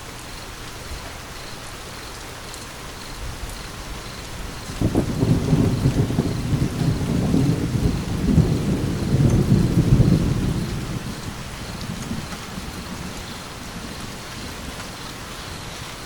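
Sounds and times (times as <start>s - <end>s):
steady rain: 0.0s - 16.0s
thunder rumbling: 3.2s - 16.0s.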